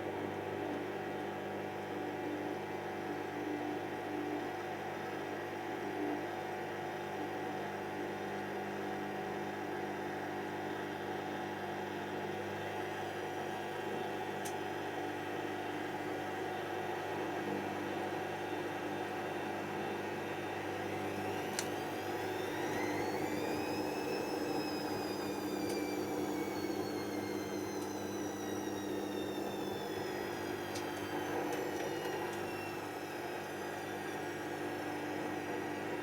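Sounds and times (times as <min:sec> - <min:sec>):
washing machine motor hum: 0:15.9 - 0:36.0.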